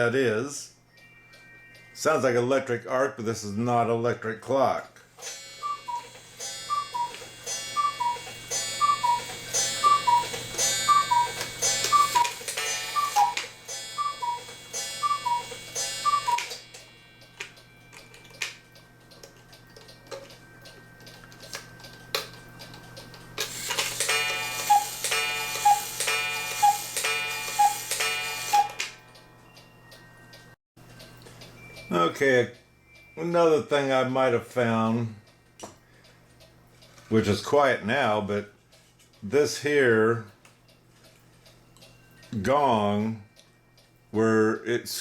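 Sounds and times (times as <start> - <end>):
clock ticking: 5.1 - 29.8
cuckoo clock calls: 5.1 - 30.2.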